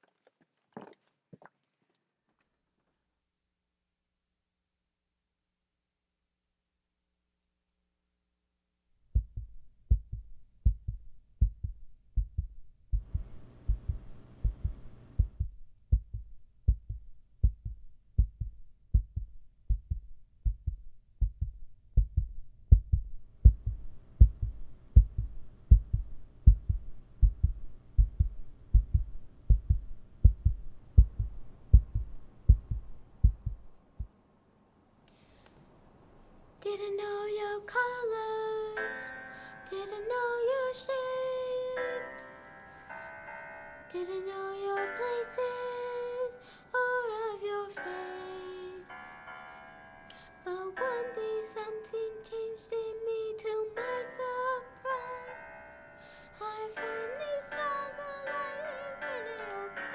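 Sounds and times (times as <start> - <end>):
heartbeat thumps: 9.1 - 34.1.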